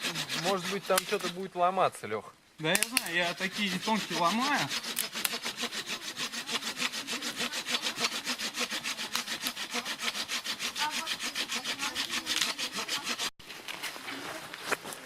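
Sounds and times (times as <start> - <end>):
hand saw cutting wood: 0.0 - 1.5, 2.9 - 13.3.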